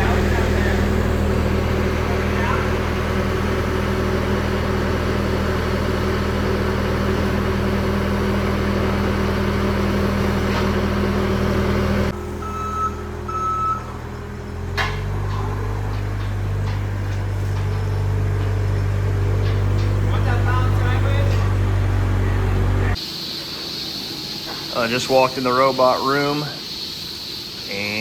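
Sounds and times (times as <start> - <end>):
deeper machine hum: 0.0 - 28.0
low machinery hum: 0.0 - 28.0
short high-pitched beeps: 12.4 - 13.9.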